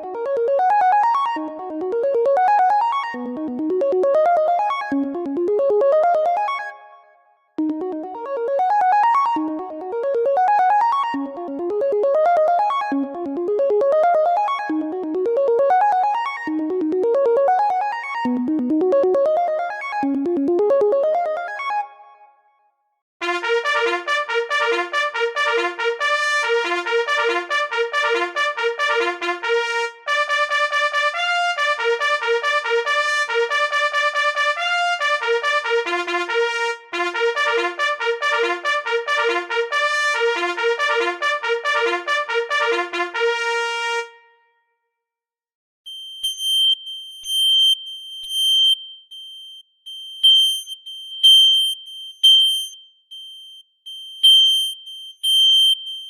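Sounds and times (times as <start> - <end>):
digital trumpet staccato notes: 23.2 - 44.3
synthesized smoke alarm beeps: 45.9 - 56.0.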